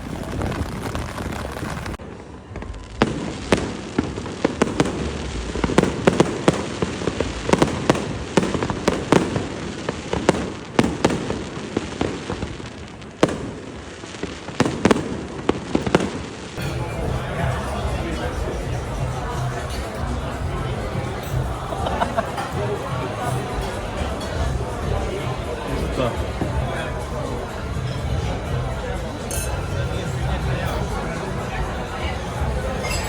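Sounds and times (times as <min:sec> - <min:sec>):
fireworks bangs and crackles: 0:00.0 - 0:33.0
steady noisy background: 0:16.2 - 0:33.0.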